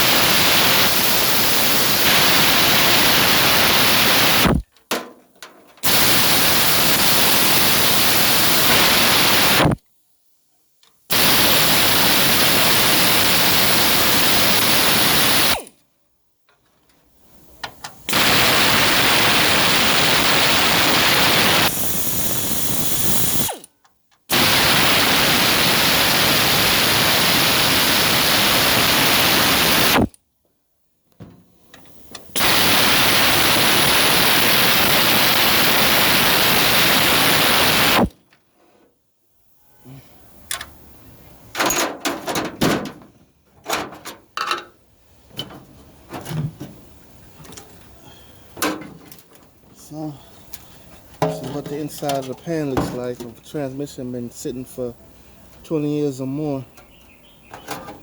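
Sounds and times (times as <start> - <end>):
metal clicks and knocks: 4.7 - 5.8, 41.6 - 44.8
power tool running: 18.1 - 23.7, 24.3 - 30.1.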